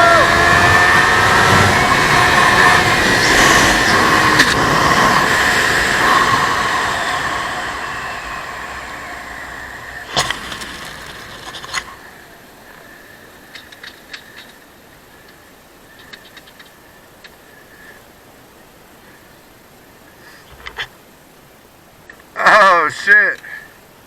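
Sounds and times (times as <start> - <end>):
wind noise: 0.0 - 17.8
motorcycle engine whining: 0.0 - 18.6.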